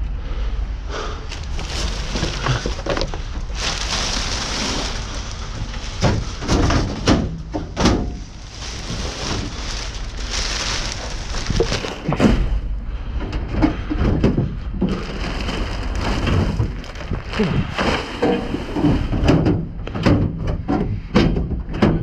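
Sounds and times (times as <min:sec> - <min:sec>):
rummaging through debris: 0:01.2 - 0:20.4
sharp knocks and clatters: 0:18.0 - 0:22.0.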